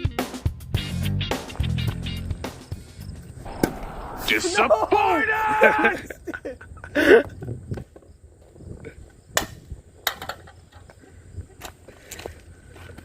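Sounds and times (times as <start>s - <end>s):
crickets chirring: 1.5s - 13.0s
short vocal outburst: 4.0s - 6.1s.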